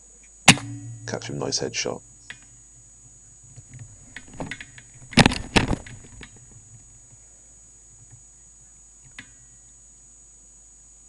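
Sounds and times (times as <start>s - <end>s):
air rifle firing: 0.5s - 1.4s
sharp knock: 0.5s - 1.9s.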